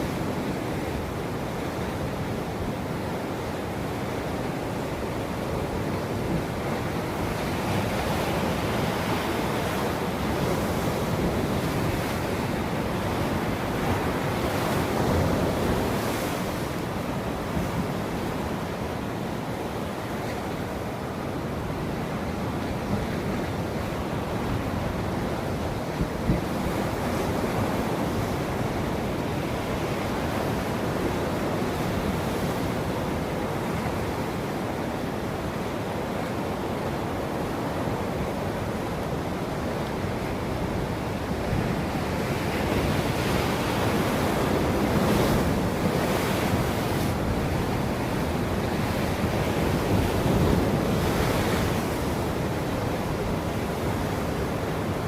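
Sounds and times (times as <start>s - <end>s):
waves breaking: 0.0s - 55.0s
wind on microphone: 21.6s - 35.9s, 37.2s - 55.0s.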